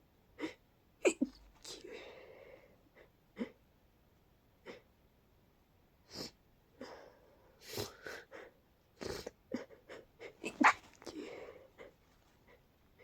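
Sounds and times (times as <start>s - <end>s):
congested sneeze-like hiccups: 10.4s - 11.1s.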